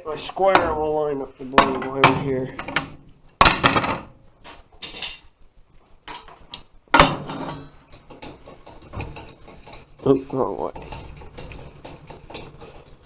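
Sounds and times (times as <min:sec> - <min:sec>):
sharp knocks: 0:01.6 - 0:04.1
metal tools clanking: 0:04.8 - 0:05.3, 0:07.0 - 0:13.0.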